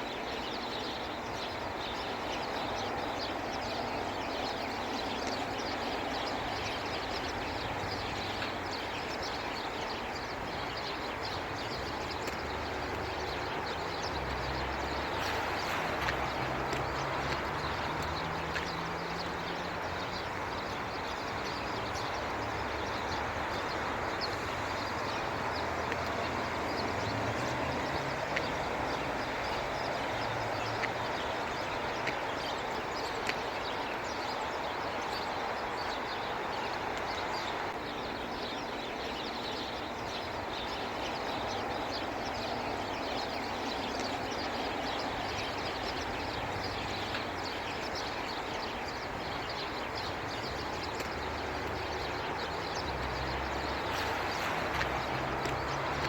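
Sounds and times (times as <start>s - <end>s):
sparrows chirping: 0.0s - 56.0s
road traffic noise: 0.1s - 56.0s
vehicle engine rumble: 51.1s - 56.0s.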